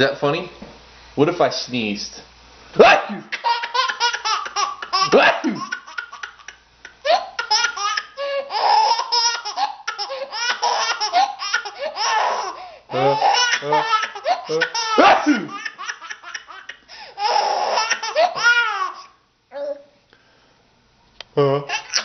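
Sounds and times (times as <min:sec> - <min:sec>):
baby laughing hysterically: 0:02.9 - 0:19.1, 0:21.7 - 0:22.0.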